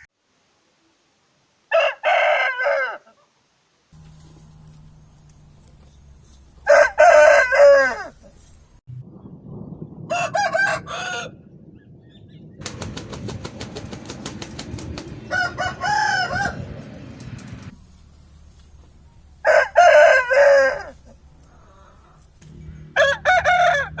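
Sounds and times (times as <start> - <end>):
roosters crowing: 1.7 - 3.2, 4.0 - 8.4, 10.1 - 11.5, 15.1 - 17.6, 19.4 - 24.0
rapid sharp pulses: 12.6 - 15.8.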